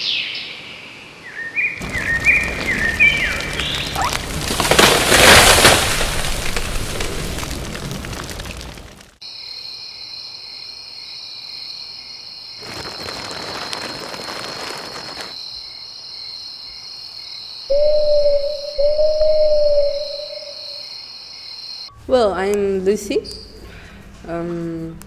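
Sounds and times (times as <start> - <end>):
insects chirring: 9.2 - 22.0
owl hooting: 17.7 - 20.9.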